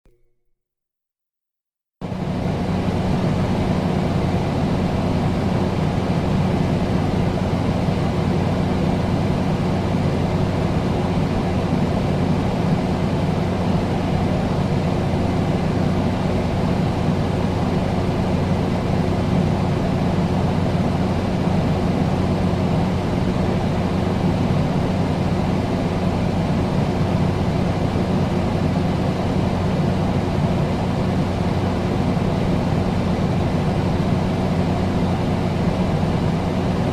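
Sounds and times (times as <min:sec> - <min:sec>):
air conditioner running: 0:02.0 - 0:36.9.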